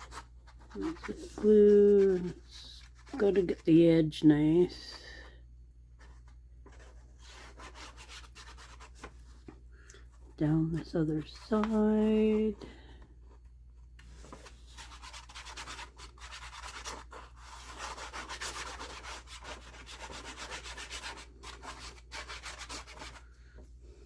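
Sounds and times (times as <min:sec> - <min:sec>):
rubbing strokes on paper: 0:00.0 - 0:03.6, 0:06.0 - 0:09.2, 0:14.1 - 0:23.3.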